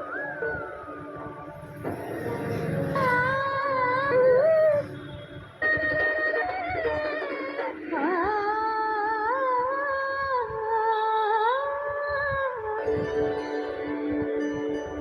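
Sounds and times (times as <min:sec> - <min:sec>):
wordless sliding melody: 0:12.8 - 0:15.0.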